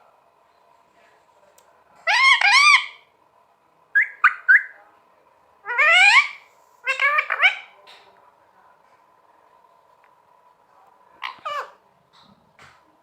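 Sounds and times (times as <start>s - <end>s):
parrot calling: 2.0s - 3.1s, 4.0s - 4.8s, 5.6s - 7.8s, 11.2s - 11.8s.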